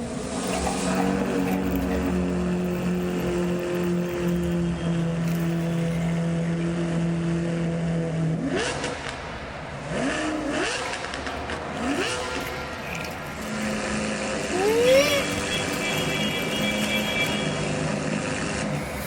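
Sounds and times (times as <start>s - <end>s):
vehicle engine humming and revving: 0.0s - 19.0s.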